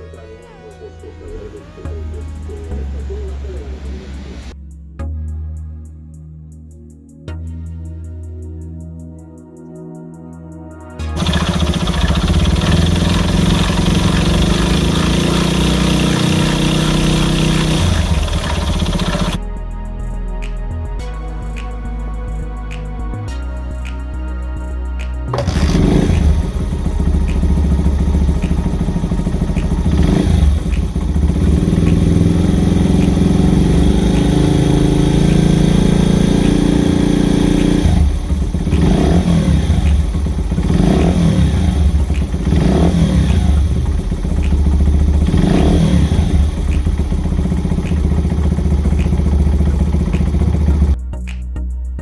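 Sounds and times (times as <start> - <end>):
motorcycle engine revving: 11.0 - 19.4, 25.4 - 51.0.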